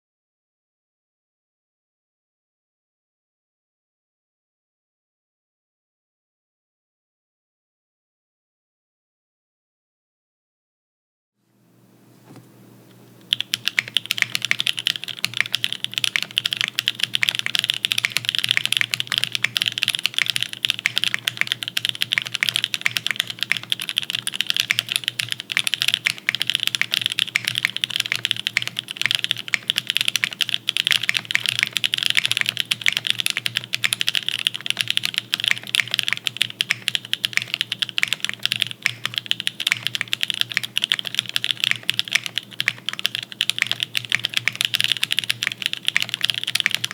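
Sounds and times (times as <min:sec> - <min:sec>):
mechanical keyboard typing: 0:13.2 - 0:46.9.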